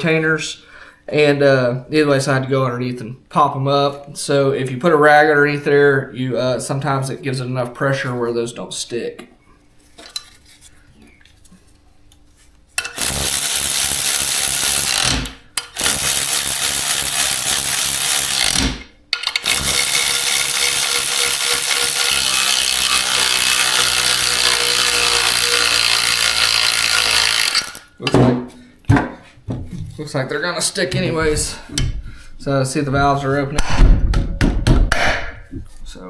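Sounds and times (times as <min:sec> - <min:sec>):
power tool running: 0:12.8 - 0:27.9.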